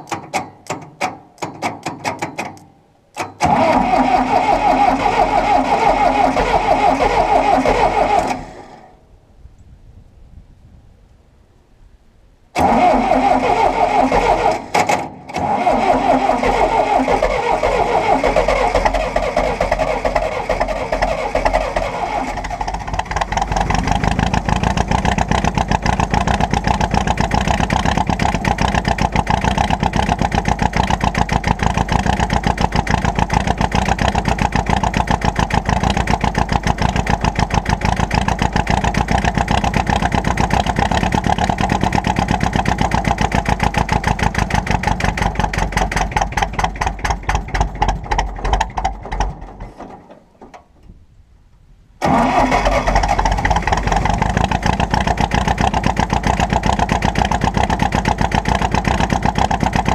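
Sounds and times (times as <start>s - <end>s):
tractor engine running: 0.0s - 9.0s, 12.6s - 59.9s
starter cranking engine: 3.2s - 8.9s, 12.6s - 50.0s, 52.0s - 59.9s.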